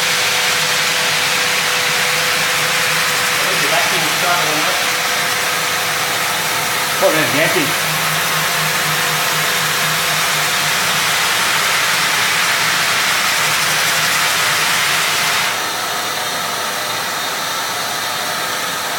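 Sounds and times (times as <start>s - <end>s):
floor sander grinding: 0.0s - 18.9s.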